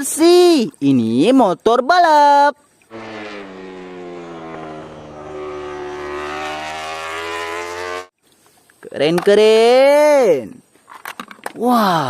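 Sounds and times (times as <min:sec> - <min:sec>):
motorbike engine drone: 0:02.9 - 0:08.1.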